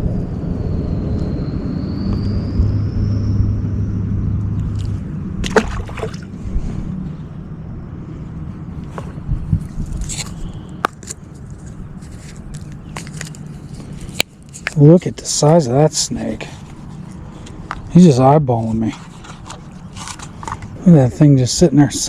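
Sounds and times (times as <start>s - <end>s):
low steady hum: 0.0s - 22.0s
water sloshing and gurgling: 4.1s - 10.7s, 16.4s - 17.9s, 18.7s - 20.9s
sharp clicks and rustles: 8.8s - 14.9s, 18.6s - 20.9s.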